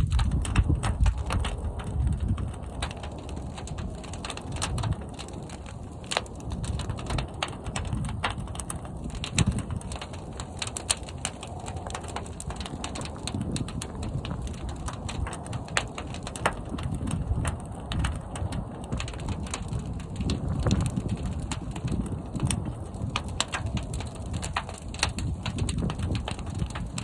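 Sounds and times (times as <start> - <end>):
fire crackling and popping: 0.0 - 27.0
fire rumbling: 0.0 - 27.0.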